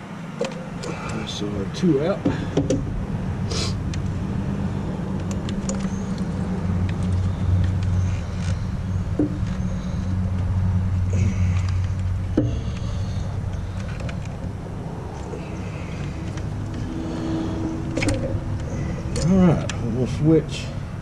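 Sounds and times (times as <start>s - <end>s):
vehicle engine idling: 0.0s - 21.0s
clicks and knocks of parts: 0.4s - 1.2s, 5.1s - 10.5s, 11.2s - 16.9s, 17.9s - 19.8s.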